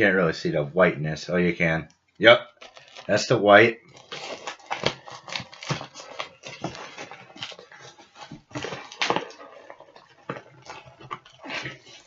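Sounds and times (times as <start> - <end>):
packaging rustling: 2.5 - 12.0.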